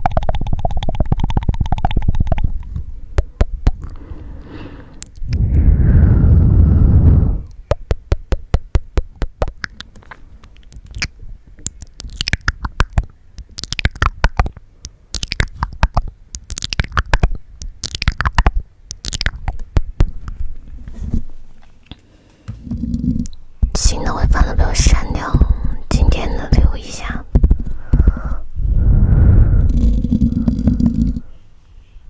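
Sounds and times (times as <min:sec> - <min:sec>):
tongue clicks: 0:00.0 - 0:04.0, 0:07.4 - 0:20.4, 0:29.6 - 0:31.3
wet mouth noises: 0:00.0 - 0:20.4, 0:22.6 - 0:31.4
breath on microphone: 0:03.8 - 0:07.6, 0:24.0 - 0:32.0.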